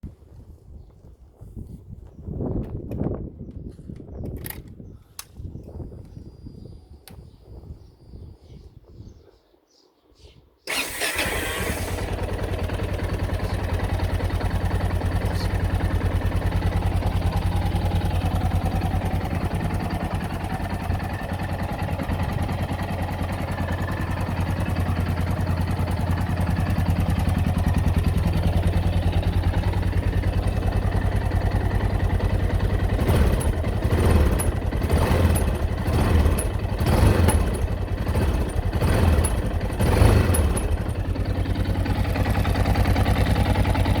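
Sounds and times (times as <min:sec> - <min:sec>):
motorcycle engine starting: 0:10.6 - 0:44.0
engine idling with knocking: 0:12.0 - 0:44.0.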